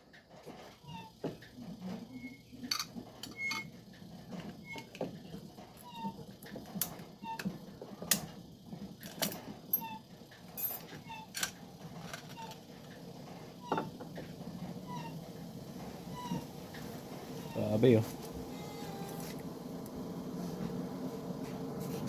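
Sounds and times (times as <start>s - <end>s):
metal parts clinking and clanking: 10.6s - 12.6s.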